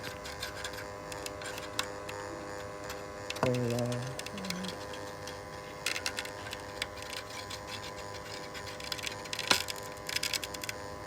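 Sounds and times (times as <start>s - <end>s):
small clicks and scrapes: 0.0s - 11.0s.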